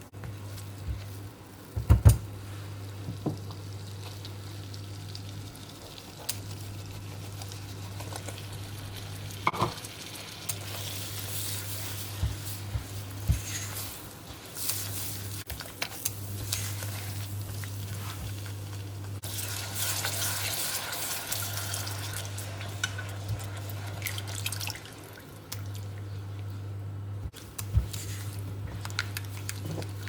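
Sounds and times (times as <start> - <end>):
food sizzling in a pan: 2.4 - 24.3.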